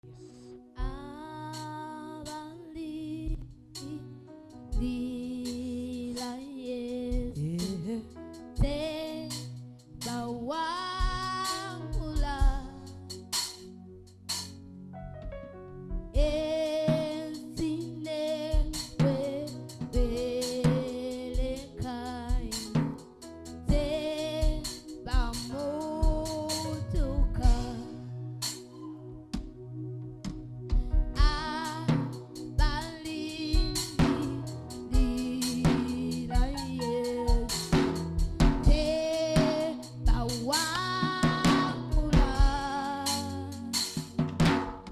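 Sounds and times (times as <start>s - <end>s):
drum kit: 4.7s - 10.4s, 11.0s - 14.6s, 16.0s - 28.8s, 30.2s - 44.9s
person singing with vibrato: 16.2s - 23.0s, 23.6s - 28.2s, 31.2s - 44.0s
bass line: 17.6s - 43.7s.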